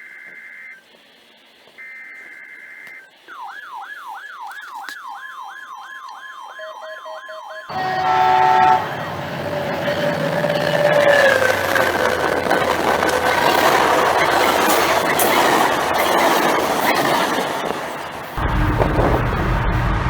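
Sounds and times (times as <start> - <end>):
long electronic beeps: 0.0 - 18.5
electronic siren yelping: 1.8 - 18.4
loud dense sound: 7.7 - 16.7, 17.4 - 20.0.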